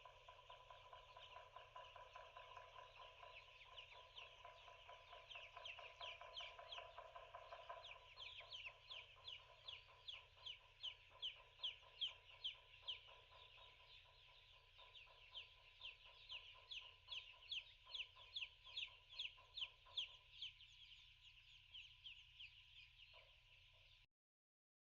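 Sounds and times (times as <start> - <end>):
chicks peeping: 0.0 - 24.0.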